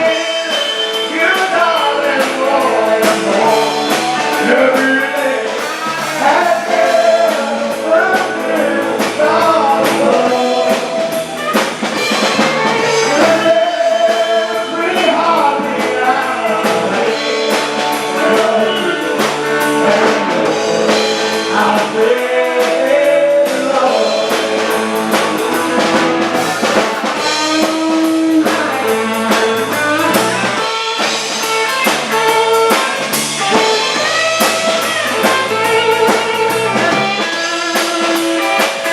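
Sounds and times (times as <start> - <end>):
live rock band playing: 0.0 - 38.9
person singing lead vocals: 0.0 - 38.9.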